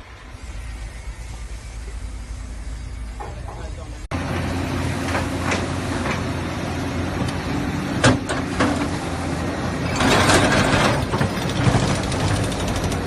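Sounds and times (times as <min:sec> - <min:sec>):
diesel engine humming: 0:00.0 - 0:13.0
excavator ripper tearing ground: 0:07.8 - 0:13.0.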